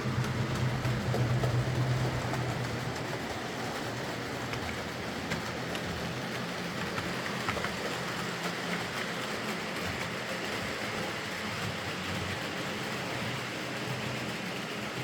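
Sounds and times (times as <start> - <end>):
model train motor hum: 0.0 - 15.0.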